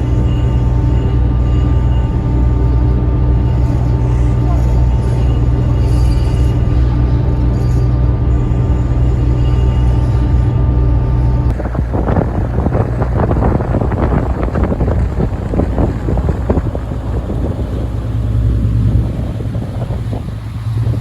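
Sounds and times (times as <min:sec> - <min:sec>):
low rumble: 0:00.0 - 0:21.0
wind buffeting microphone: 0:10.2 - 0:21.0.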